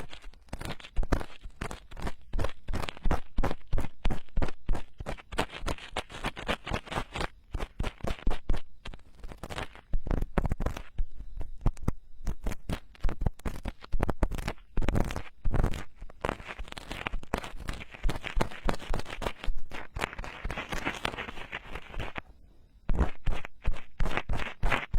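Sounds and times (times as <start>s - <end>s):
tools scraping in microphone ear: 0.0s - 3.8s, 5.0s - 22.2s, 22.9s - 24.9s.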